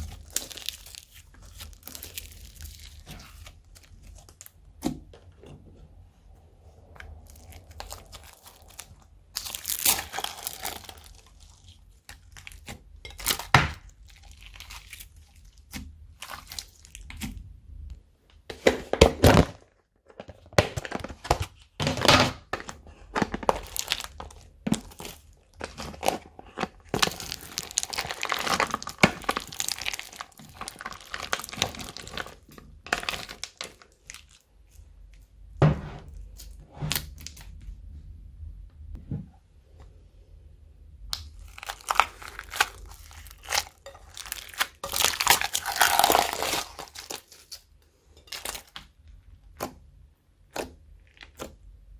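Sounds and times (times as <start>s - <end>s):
slime squishing and popping: 0.0s - 5.1s, 7.0s - 17.5s, 23.4s - 34.4s, 41.0s - 47.6s.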